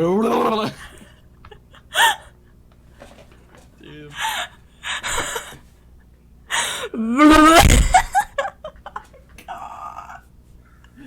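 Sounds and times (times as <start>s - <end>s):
person making squealing vocal sound: 7.0s - 8.0s.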